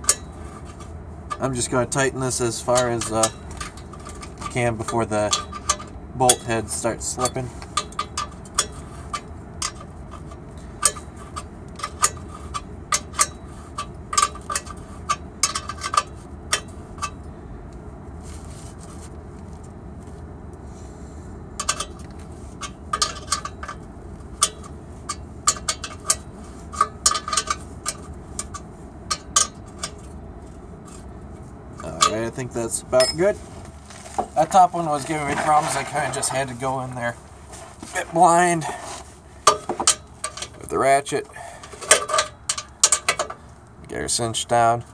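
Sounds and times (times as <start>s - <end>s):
metal clinks: 33.0s - 33.4s.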